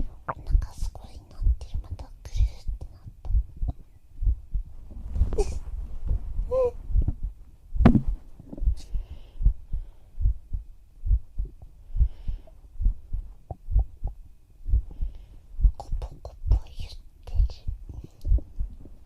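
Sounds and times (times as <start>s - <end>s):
heartbeat thumps: 0.0s - 16.7s, 17.4s - 19.0s
loud knock: 7.8s - 8.2s.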